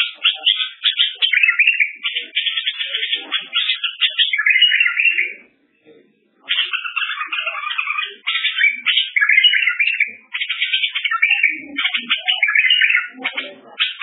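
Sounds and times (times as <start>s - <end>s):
songbird twittering: 0.0s - 5.5s, 6.4s - 14.0s.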